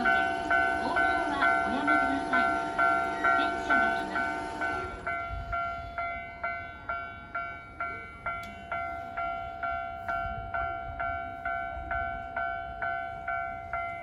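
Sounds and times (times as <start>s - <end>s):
level crossing warning bell: 0.0s - 14.0s.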